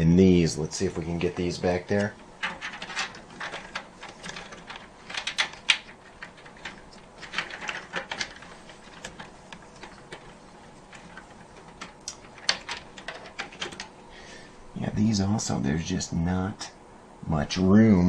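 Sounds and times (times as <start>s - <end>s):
cables clicking and rustling: 0.6s - 14.1s.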